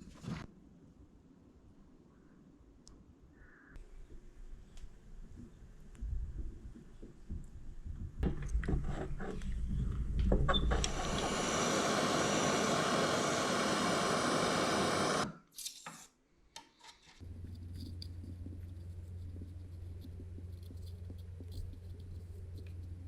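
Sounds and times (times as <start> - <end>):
power tool rasping: 10.8 - 15.3
low hum: 17.2 - 23.0.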